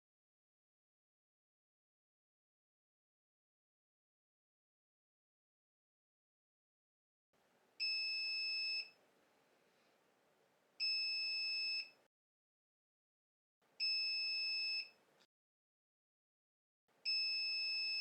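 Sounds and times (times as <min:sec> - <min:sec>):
keypad buzzer beeps: 0:07.8 - 0:08.9, 0:10.8 - 0:12.0, 0:13.8 - 0:15.0, 0:17.1 - 0:18.0.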